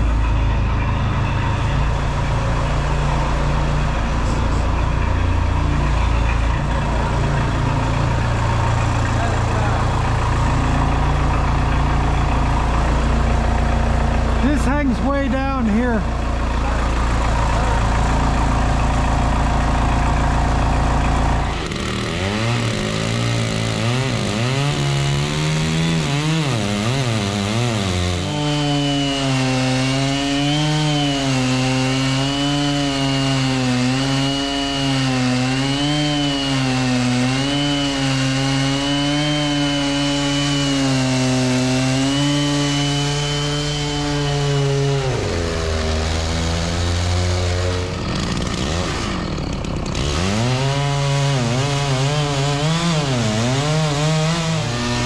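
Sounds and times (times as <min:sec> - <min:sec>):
sawmill engine running: 0:00.0 - 0:55.0
band blade whining: 0:00.1 - 0:16.0.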